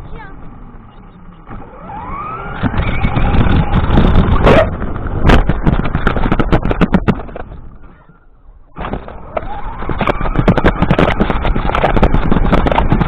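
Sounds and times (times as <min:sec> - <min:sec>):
wheels clattering on ground: 0:02.6 - 0:13.0.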